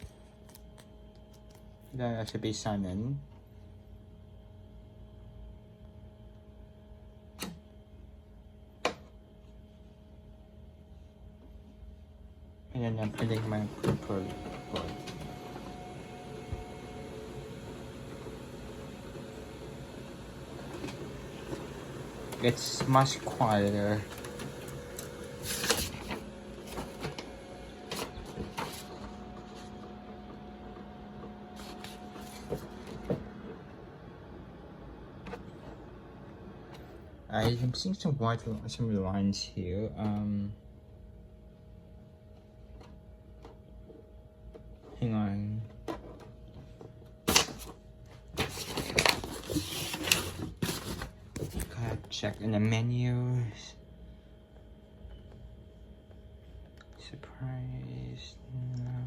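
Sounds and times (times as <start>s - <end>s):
faint steady hum: 0.0s - 59.0s
short paper rustles: 48.4s - 51.8s.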